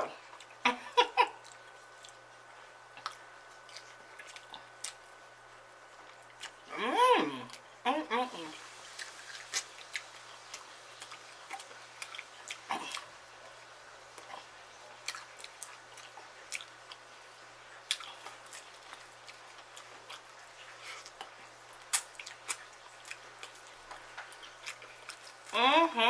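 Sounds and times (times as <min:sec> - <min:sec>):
person chewing food: 0:00.0 - 0:06.7, 0:08.6 - 0:25.6
wet mouth smacks: 0:21.9 - 0:22.6.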